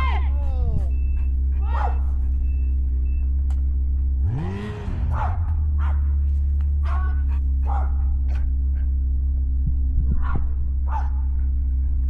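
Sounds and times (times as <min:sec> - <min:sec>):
steady low hum: 0:00.0 - 0:12.0
dog deep bark: 0:01.6 - 0:02.5, 0:04.2 - 0:08.9, 0:10.1 - 0:11.4.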